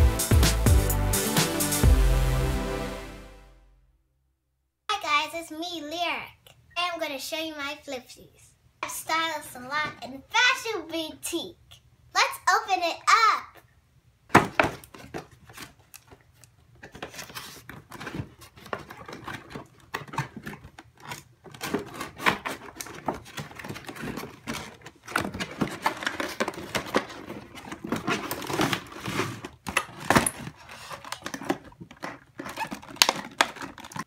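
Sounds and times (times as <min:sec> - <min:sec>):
cardboard and plastic rustling: 0:14.3 - 0:34.0.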